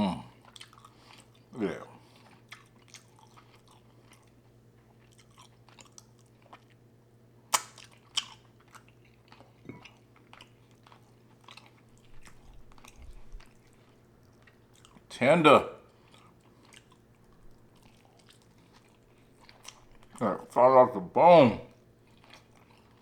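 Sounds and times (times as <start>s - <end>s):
person chewing: 0.3s - 6.8s, 7.5s - 15.1s, 15.8s - 20.6s, 21.8s - 23.0s
wet mouth smacking: 7.5s - 8.4s.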